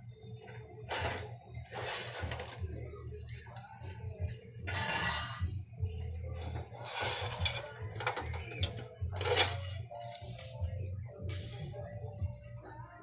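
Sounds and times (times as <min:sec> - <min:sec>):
rack parts clattering and scraping: 0:00.5 - 0:02.7, 0:04.7 - 0:05.5, 0:06.4 - 0:10.6.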